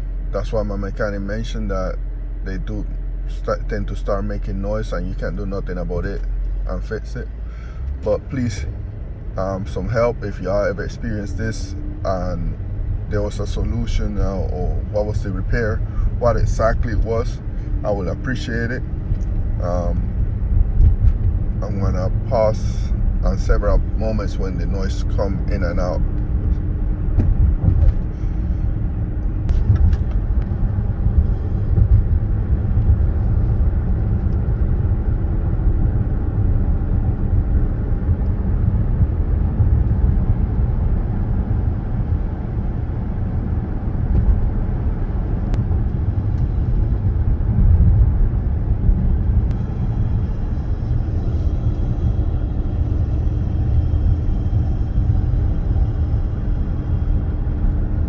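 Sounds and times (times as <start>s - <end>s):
road and engine rumble: 0.0s - 58.0s
steady whine: 0.0s - 58.0s
faint high whine: 49.5s - 58.0s.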